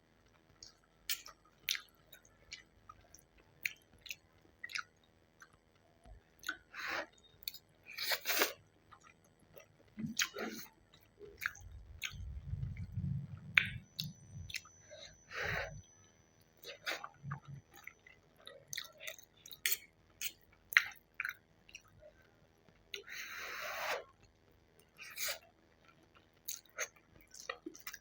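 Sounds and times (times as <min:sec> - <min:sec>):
noodles being chewed: 0:00.2 - 0:14.7, 0:16.6 - 0:23.1, 0:23.8 - 0:28.0
low rumble: 0:11.6 - 0:14.5.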